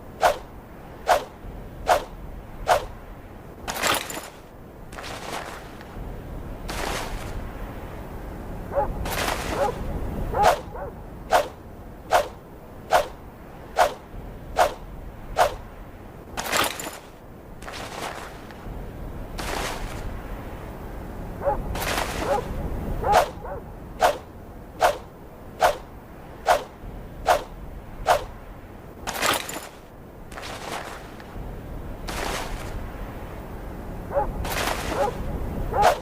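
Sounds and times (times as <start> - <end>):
sword swishing through air: 0.2 - 3.0, 9.0 - 10.7, 11.3 - 15.7, 21.7 - 23.4, 24.0 - 28.4, 29.1 - 31.2, 32.1 - 32.8, 34.4 - 36.0.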